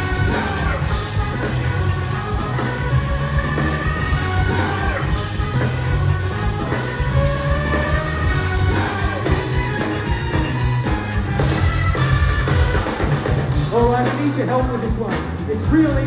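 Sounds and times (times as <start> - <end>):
bass guitar: 0.0 - 16.0
drums: 0.0 - 16.0
horns or keys melody: 0.0 - 16.0.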